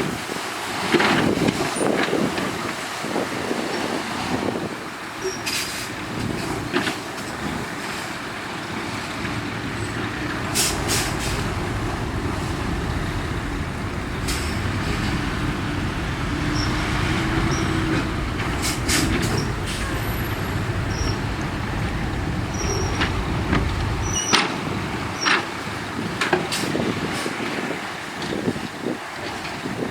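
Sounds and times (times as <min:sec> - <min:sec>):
truck engine running: 0:05.0 - 0:27.2
short sharp hisses or clanks: 0:10.6 - 0:11.6, 0:14.2 - 0:14.7.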